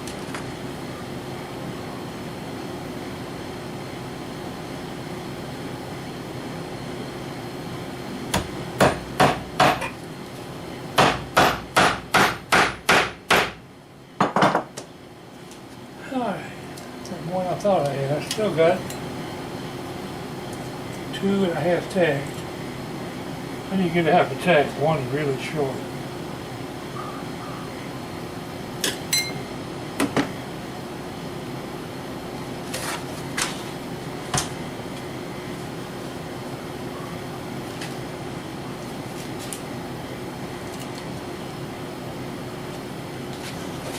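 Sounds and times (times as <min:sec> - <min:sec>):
steady hum: 0:00.0 - 0:43.9
hammer driving tacks into wood: 0:08.3 - 0:09.9, 0:11.0 - 0:13.6.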